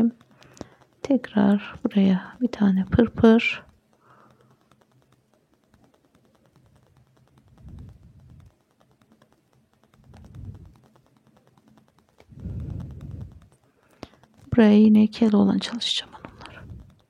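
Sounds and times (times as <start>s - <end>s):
needle and thread ticking: 0.0s - 17.0s
soft low rustles: 6.5s - 8.7s, 9.8s - 11.4s, 12.2s - 14.4s.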